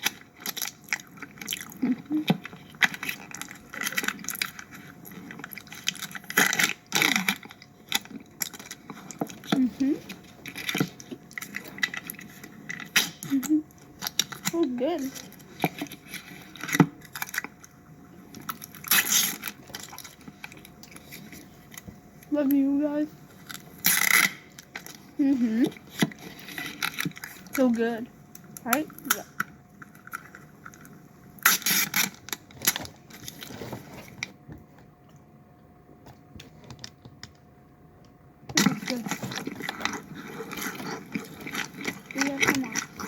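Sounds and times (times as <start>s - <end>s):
chewing with wet mouth clicks: 0.0s - 9.5s, 38.6s - 43.0s
sandwich crunch: 0.0s - 22.3s, 23.4s - 27.6s, 28.3s - 34.3s, 38.5s - 43.0s
crunchy sandwich bites: 15.2s - 21.8s, 29.0s - 34.2s.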